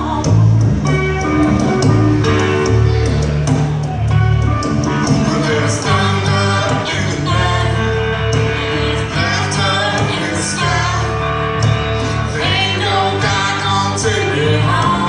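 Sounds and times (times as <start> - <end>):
blues-rock band playing live: 0.0 - 15.0
person singing: 4.8 - 15.0.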